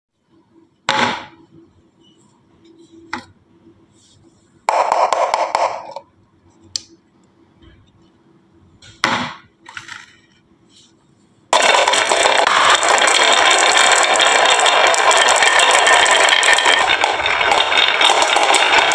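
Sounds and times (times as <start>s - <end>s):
marble clacks: 11.6s - 18.9s
marbles rattling down wooden track: 11.6s - 18.9s.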